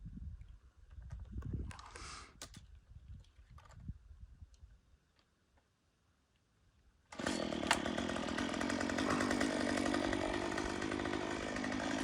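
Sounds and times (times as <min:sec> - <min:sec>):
chainsaw running: 0:07.1 - 0:12.0.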